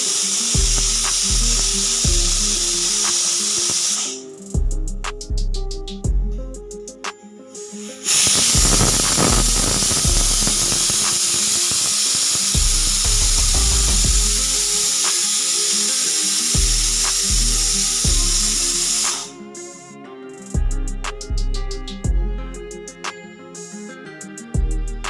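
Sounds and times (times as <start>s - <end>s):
pressure cooker steam hiss: 0.0s - 4.3s, 8.0s - 19.3s
music playing: 0.0s - 25.0s.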